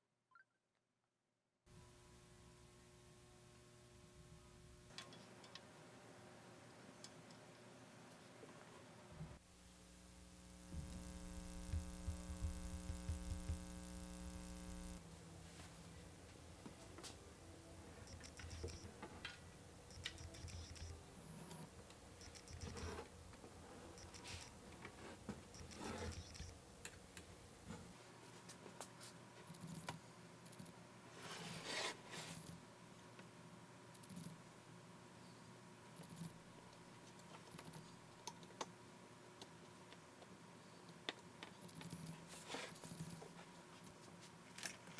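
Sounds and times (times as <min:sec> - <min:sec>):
steady hum with overtones: 0:09.3 - 0:24.8
low thumps: 0:10.6 - 0:15.0.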